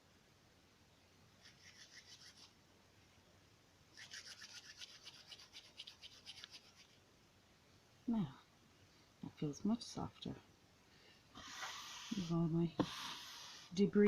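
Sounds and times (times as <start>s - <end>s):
fibres rubbed between palms: 1.4s - 2.6s, 3.9s - 7.0s, 11.3s - 13.9s.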